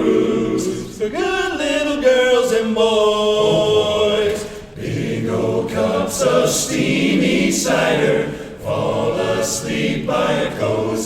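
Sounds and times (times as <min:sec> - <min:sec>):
men singing in close harmony: 0:00.0 - 0:11.0.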